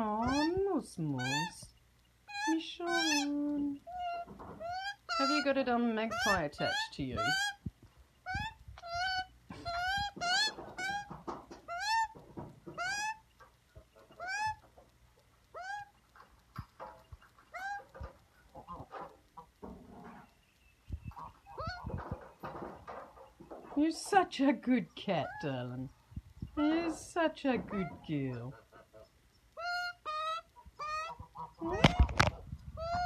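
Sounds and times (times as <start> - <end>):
magpie squawking: 0.0 - 1.7, 2.3 - 11.1, 11.7 - 13.5, 14.1 - 14.7, 27.7 - 33.0.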